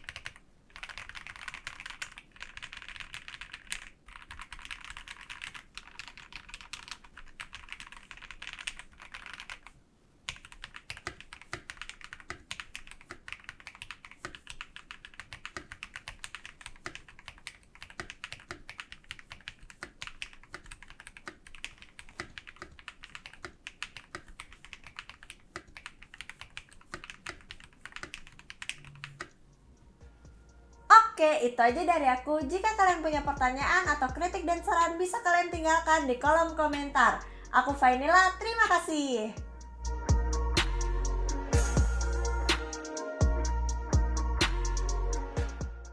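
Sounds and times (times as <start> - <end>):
mechanical keyboard typing: 0.0 - 29.4.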